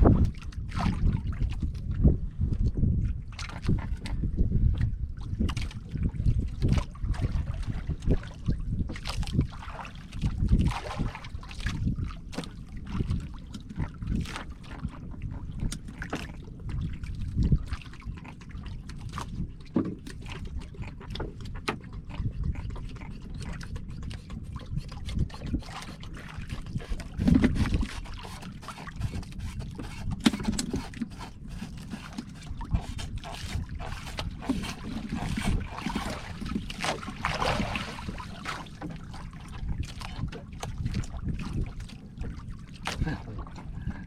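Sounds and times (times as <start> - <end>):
water lapping and sloshing: 0.0 - 44.0
wind on microphone: 0.0 - 44.0
water splashing: 23.0 - 44.0.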